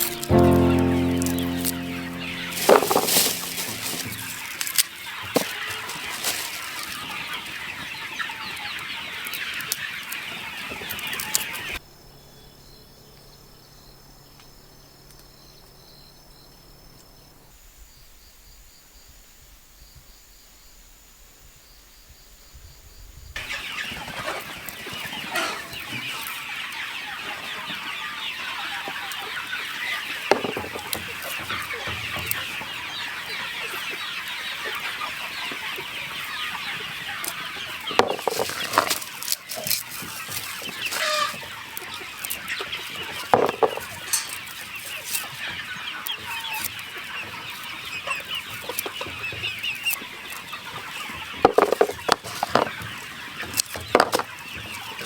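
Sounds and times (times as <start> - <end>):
chickens clucking: 0.0 - 11.8, 23.4 - 55.0.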